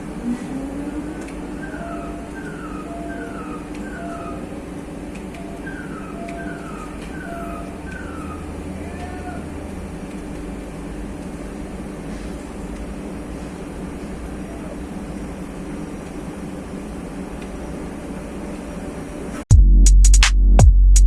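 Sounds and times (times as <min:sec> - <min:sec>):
printing press humming: 0:00.0 - 0:19.4
falling electronic beep: 0:05.4 - 0:08.5.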